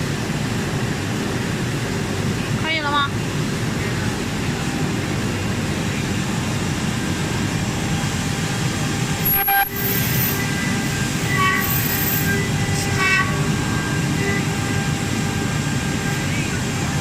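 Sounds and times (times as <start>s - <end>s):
short high-pitched tones: 9.2s - 14.4s.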